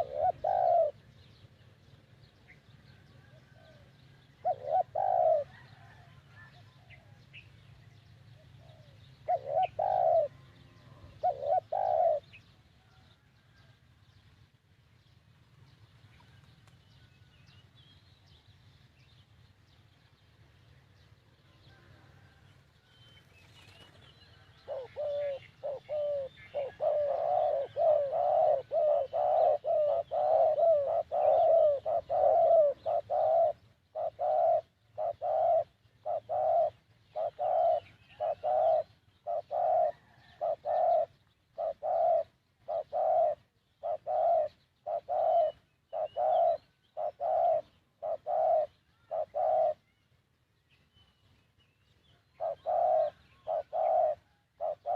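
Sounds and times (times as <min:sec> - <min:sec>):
doves cooing: 0:00.0 - 0:07.3, 0:08.3 - 0:13.6, 0:21.6 - 0:49.9, 0:52.1 - 0:54.9.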